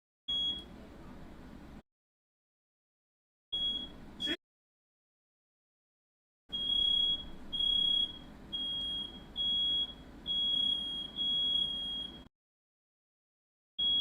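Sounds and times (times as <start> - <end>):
smoke alarm beeping: 0.3 - 0.7, 3.6 - 4.4, 6.5 - 12.3, 13.8 - 14.0.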